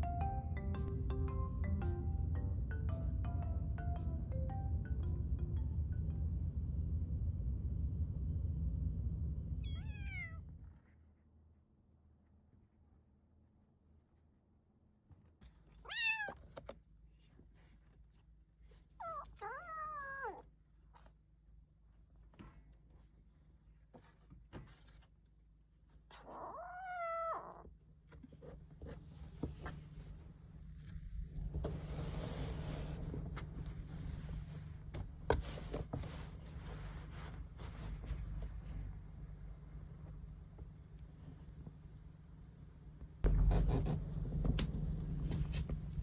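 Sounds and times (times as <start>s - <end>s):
low rumbling noise: 0.0s - 10.7s, 42.2s - 46.0s
kitten meowing: 9.7s - 10.4s, 15.9s - 16.4s, 19.0s - 20.4s, 26.3s - 27.6s.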